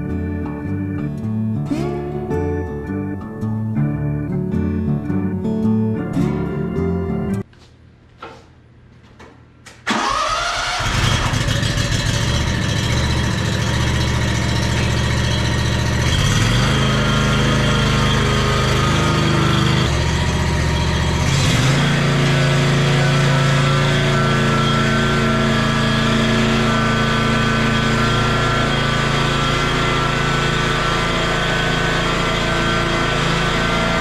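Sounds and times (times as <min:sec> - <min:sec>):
mower engine running: 0:00.0 - 0:07.4, 0:10.1 - 0:34.0.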